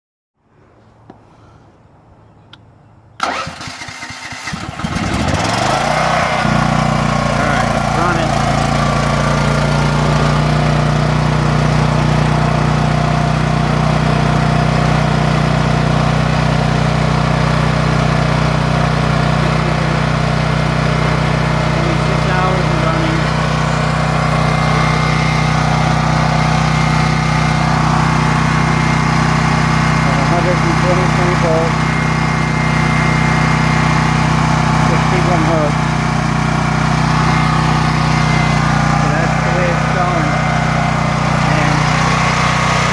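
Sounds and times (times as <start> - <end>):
generator engine starting and running: 3.0 - 42.9.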